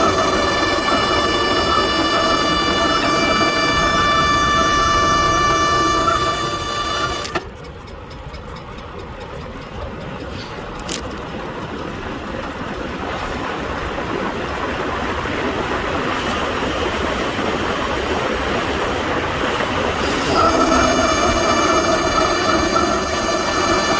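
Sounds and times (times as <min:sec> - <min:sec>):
bike tyre noise: 0:10.2 - 0:23.9.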